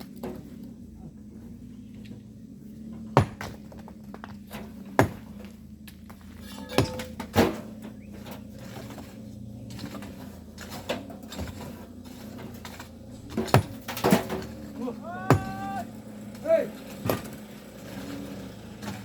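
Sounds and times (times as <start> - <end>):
hand tools clinking on stone: 6.4 - 7.4.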